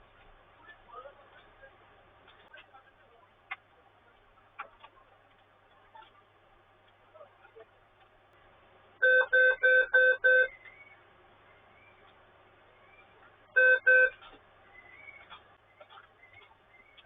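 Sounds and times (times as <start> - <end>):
short computer beeps: 9.0 - 10.6, 13.6 - 14.2.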